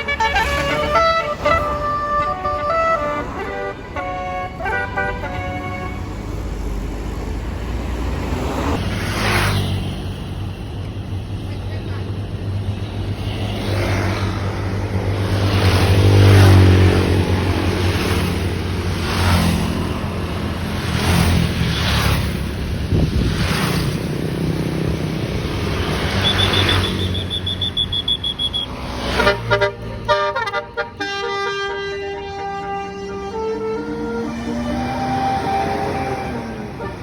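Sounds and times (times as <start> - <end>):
multi-tone musical horn: 0.0 - 6.3, 29.1 - 37.0
bus diesel engine running: 29.6 - 37.0.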